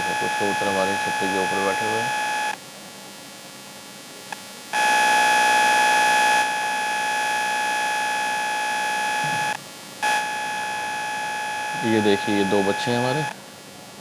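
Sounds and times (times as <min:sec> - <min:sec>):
electronic buzzer tone: 0:00.0 - 0:02.6, 0:04.7 - 0:13.4.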